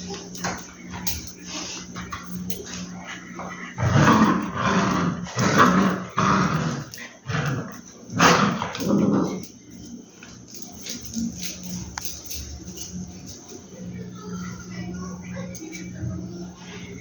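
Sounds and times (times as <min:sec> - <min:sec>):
puppy growling: 0:01.1 - 0:09.6.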